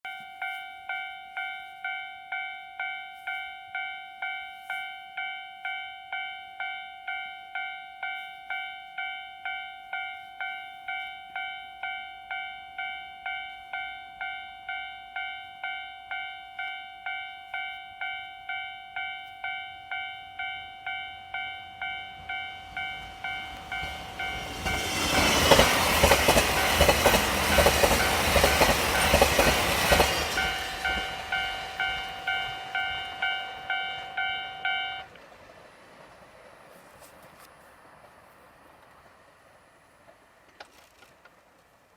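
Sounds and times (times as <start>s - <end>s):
level crossing warning bell: 0.1s - 35.1s
diesel train rushing through: 21.3s - 36.8s.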